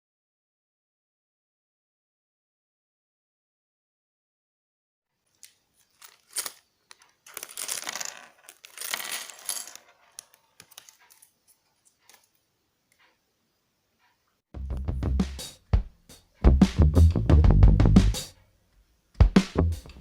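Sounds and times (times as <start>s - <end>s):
plastic pieces clattering: 5.4s - 11.3s
music with drum beat: 14.6s - 18.3s, 19.2s - 20.0s.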